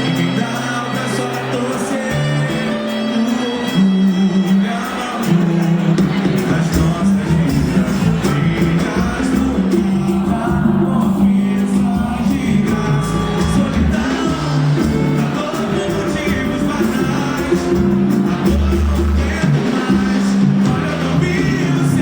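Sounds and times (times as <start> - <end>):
band playing a song: 0.0 - 22.0
person singing: 0.0 - 22.0.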